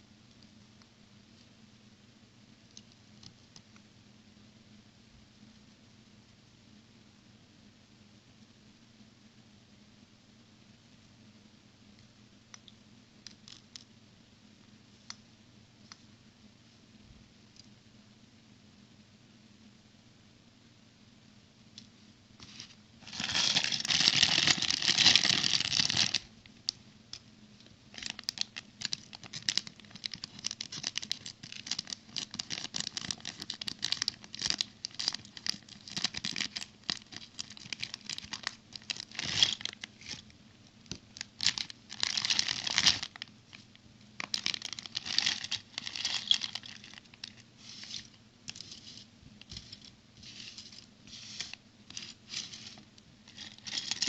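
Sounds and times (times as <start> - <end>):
plastic packaging crinkling: 22.4 - 26.3, 27.9 - 40.3, 40.9 - 54.0.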